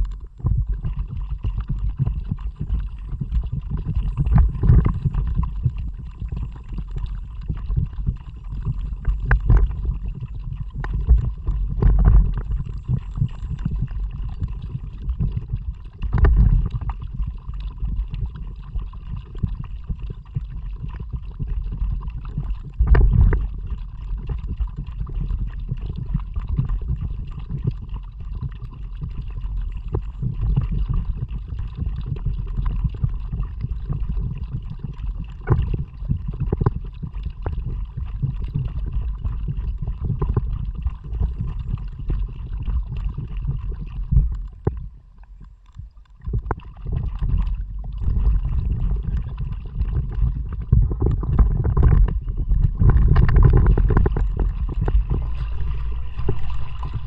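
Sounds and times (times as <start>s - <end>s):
water sloshing with paddle strokes: 0.0s - 57.0s
low wind rumble: 46.7s - 57.0s.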